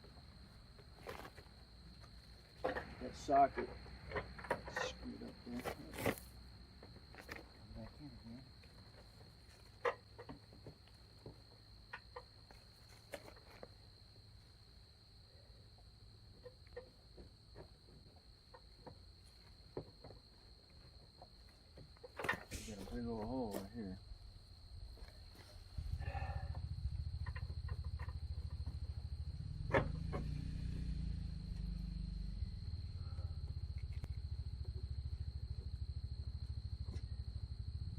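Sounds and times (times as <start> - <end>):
low pulsing rumble: 25.6 - 37.9.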